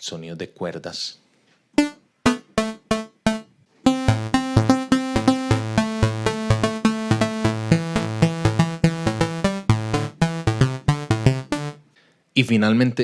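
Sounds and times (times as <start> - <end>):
synthesizer pluck melody: 1.8 - 11.8.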